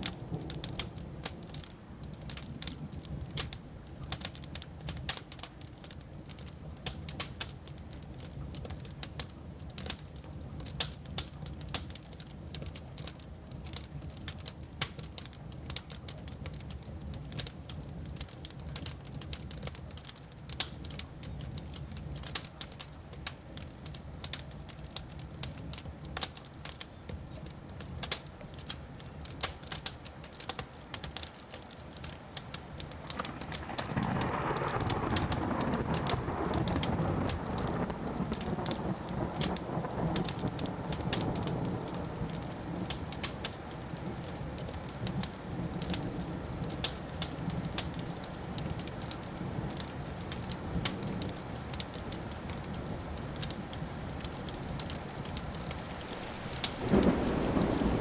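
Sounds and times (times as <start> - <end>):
wood fire crackling and popping: 0.0 - 58.0
rumble of thunder: 33.0 - 43.0, 55.8 - 58.0.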